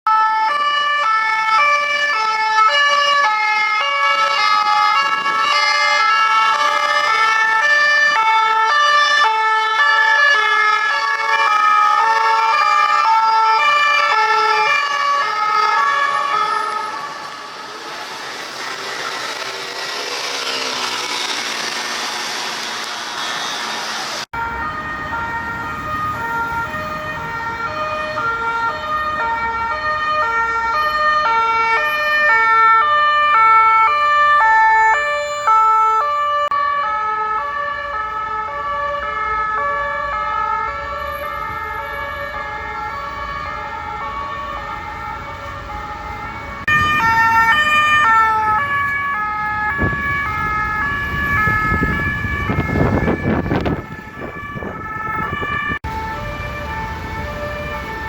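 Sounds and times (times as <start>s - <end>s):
two-tone police sirens: 0.0s - 58.0s
traffic noise: 0.1s - 58.0s
vehicle passing: 2.4s - 30.2s.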